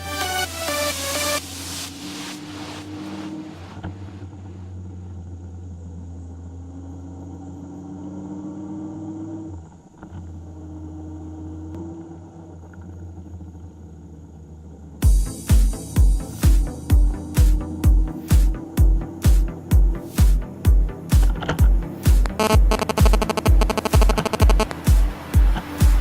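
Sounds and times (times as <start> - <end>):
music with thumping beat: 0.0 - 3.3, 15.0 - 26.0
motorcycle engine accelerating: 1.2 - 26.0.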